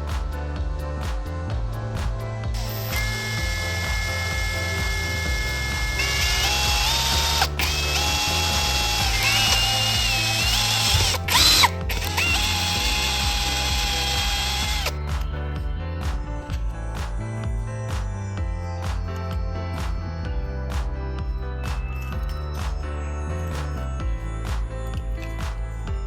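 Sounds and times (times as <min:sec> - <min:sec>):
background music: 0:00.0 - 0:26.0
electric drill motor whining: 0:02.6 - 0:15.0.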